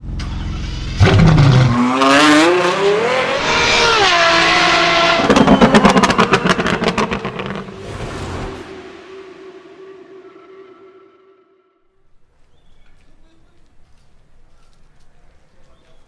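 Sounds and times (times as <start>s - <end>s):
car engine revving: 0.8s - 11.2s
exhaust crackles and pops: 5.2s - 8.7s.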